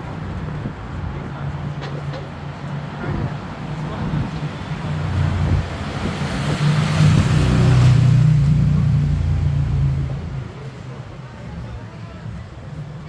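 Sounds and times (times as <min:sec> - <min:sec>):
vehicle engine passing: 0:04.7 - 0:10.9.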